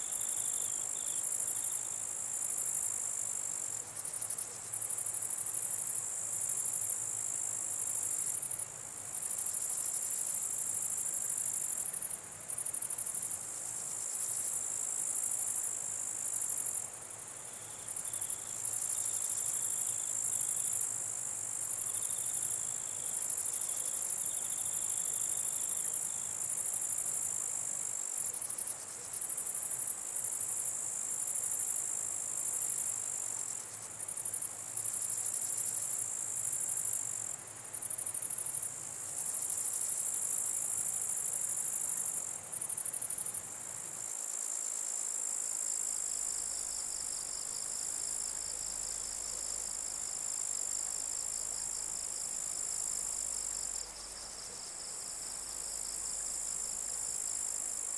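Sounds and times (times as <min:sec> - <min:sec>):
lower pulsing insect trill: 0:00.0 - 0:57.9
steady high insect buzz: 0:00.0 - 0:57.9
high-pitched insect trill: 0:14.0 - 0:43.5.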